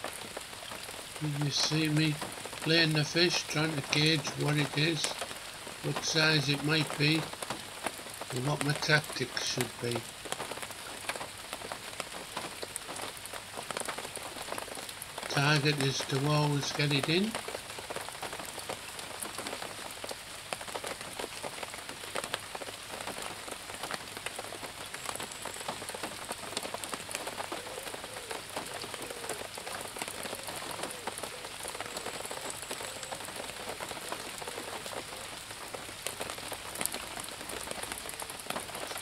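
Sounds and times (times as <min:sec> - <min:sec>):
heavy rain falling: 0:00.0 - 0:39.0.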